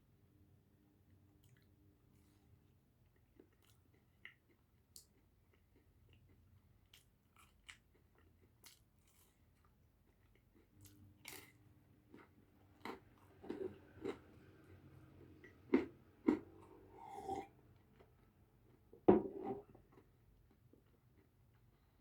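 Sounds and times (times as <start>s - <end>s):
person chewing pizza: 1.4s - 18.9s.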